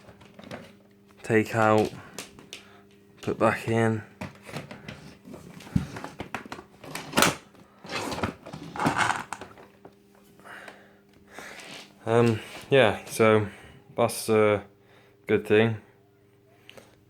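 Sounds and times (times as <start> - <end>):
vacuum cleaner handling clicks and knocks: 0.0 - 0.8.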